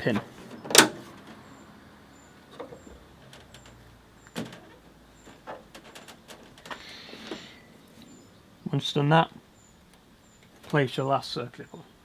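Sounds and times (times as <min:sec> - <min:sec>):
light clicks and knocks: 0:02.5 - 0:07.4.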